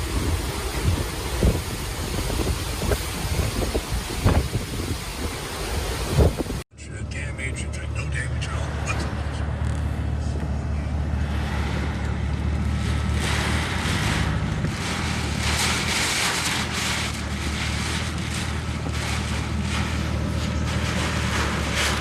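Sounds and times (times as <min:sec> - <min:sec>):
strong wind gusting on microphone: 0:00.0 - 0:06.6.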